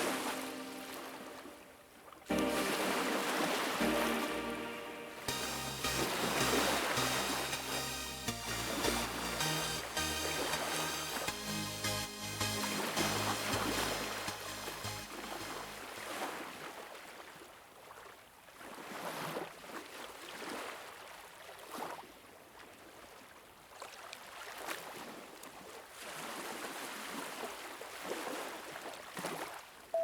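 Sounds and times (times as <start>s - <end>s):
moving water wash: 0.0s - 16.4s.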